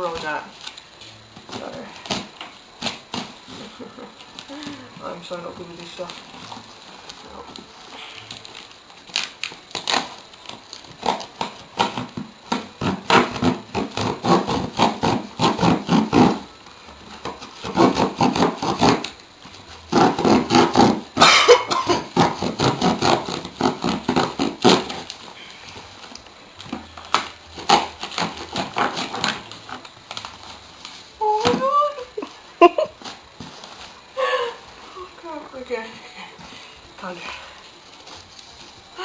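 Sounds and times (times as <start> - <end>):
packing tape ripping: 0.0 - 4.8, 5.7 - 31.9
cardboard crackling and rustling: 0.0 - 21.1, 21.9 - 32.1, 32.9 - 39.0.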